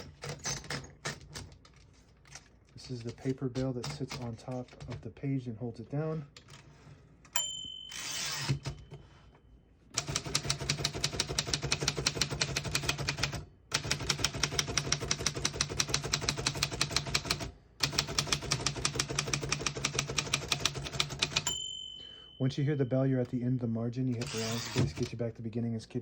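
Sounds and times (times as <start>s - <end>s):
manual typewriter typing: 0.0s - 1.7s, 2.3s - 5.1s, 10.0s - 21.5s, 24.1s - 25.2s.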